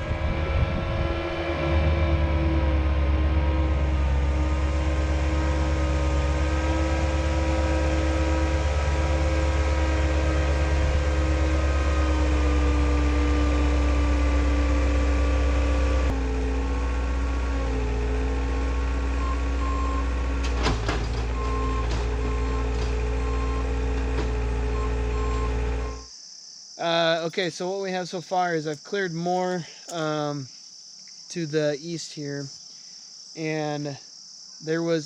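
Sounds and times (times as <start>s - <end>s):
skid steer engine running: 0.0s - 26.0s
reversing alarm beeping: 19.2s - 20.2s, 21.3s - 26.1s.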